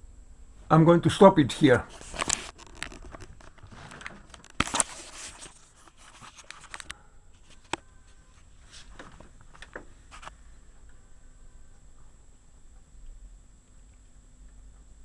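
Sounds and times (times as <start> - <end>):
rustling: 1.8 - 10.4.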